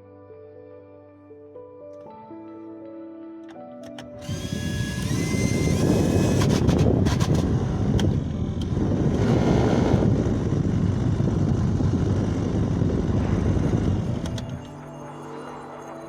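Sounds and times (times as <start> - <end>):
fan clicks and rattles: 3.9 - 14.7
blower fan rushing: 4.2 - 16.0.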